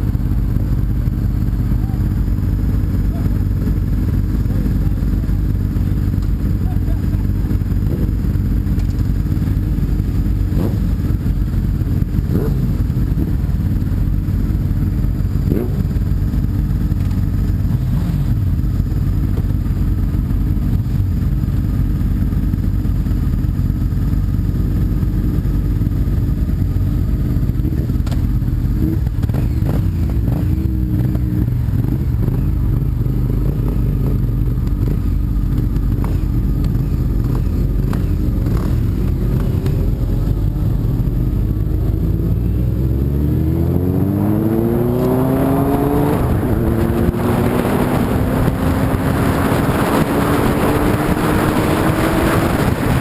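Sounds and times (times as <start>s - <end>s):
motorcycle engine running: 0.0s - 53.0s
wind noise on microphone: 43.6s - 53.0s.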